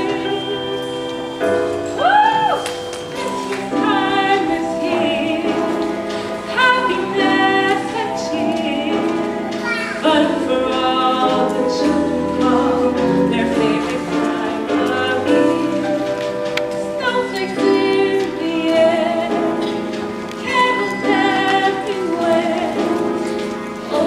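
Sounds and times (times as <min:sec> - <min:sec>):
musical accompaniment: 0:00.0 - 0:24.0
choir singing in harmony: 0:10.1 - 0:19.7, 0:20.4 - 0:24.0.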